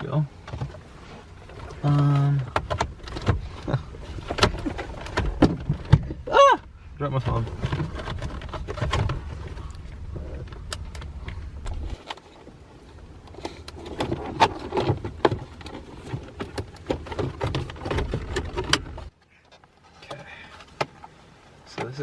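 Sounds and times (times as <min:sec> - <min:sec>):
hands working loose car trim: 0:00.4 - 0:06.2, 0:13.3 - 0:19.1
low rumble: 0:02.9 - 0:12.0.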